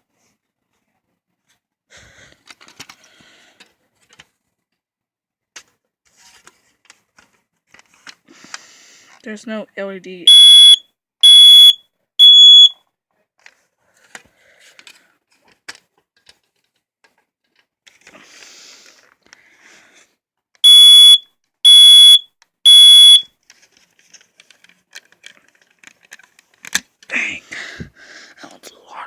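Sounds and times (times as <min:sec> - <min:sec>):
smoke alarm shrill beeps: 0:10.3 - 0:12.8, 0:20.6 - 0:23.3.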